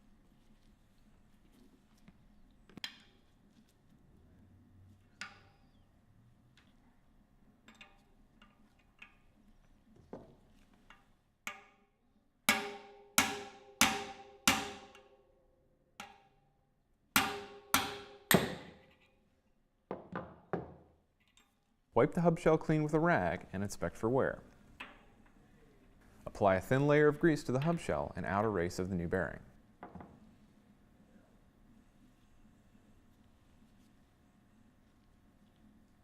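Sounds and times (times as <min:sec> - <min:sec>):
hammer striking metal tool: 0:12.5 - 0:15.1, 0:17.2 - 0:18.8.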